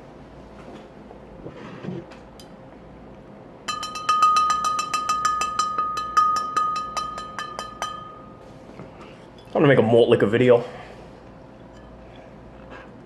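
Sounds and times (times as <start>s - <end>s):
bell-like tone struck rapidly: 3.7s - 8.5s.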